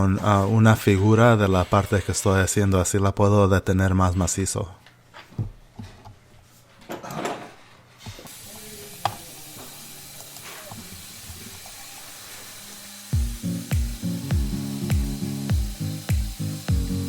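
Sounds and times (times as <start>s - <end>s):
steady spray hiss: 8.3s - 17.0s
music: 13.1s - 17.0s.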